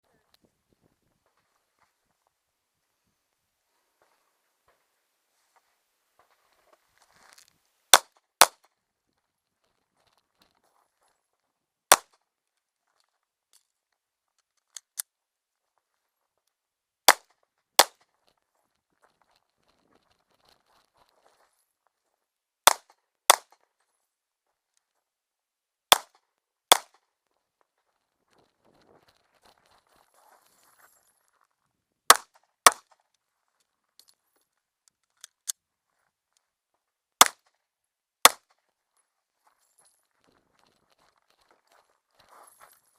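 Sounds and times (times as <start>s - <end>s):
faint rustle: 0.1s - 7.8s, 18.1s - 22.3s, 27.2s - 31.8s, 38.6s - 42.9s
pistol shots: 11.9s - 12.2s, 17.1s - 18.0s, 22.7s - 23.6s, 25.9s - 27.0s, 32.1s - 32.9s.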